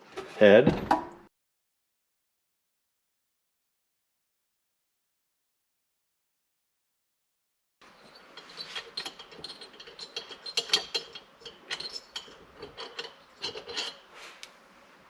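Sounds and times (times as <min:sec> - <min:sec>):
socket ratchet clicking and scraping: 0:08.0 - 0:14.1.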